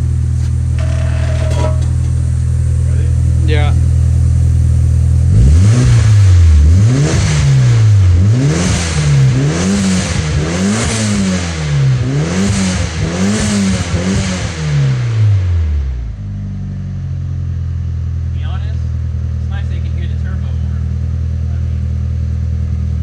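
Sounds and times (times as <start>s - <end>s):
car engine revving: 0.0s - 15.5s.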